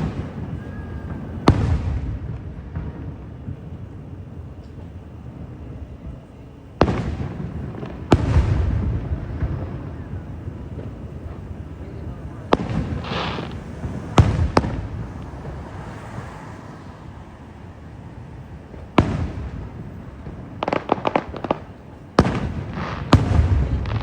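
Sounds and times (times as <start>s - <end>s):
firework hiss: 0.0s - 24.0s
firework shells bursting: 5.8s - 16.4s, 18.5s - 24.0s.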